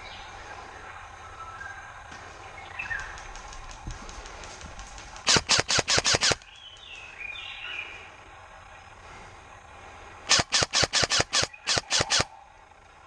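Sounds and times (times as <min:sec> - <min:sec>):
airsoft gun firing volleys: 0:03.1 - 0:07.0, 0:10.3 - 0:12.4.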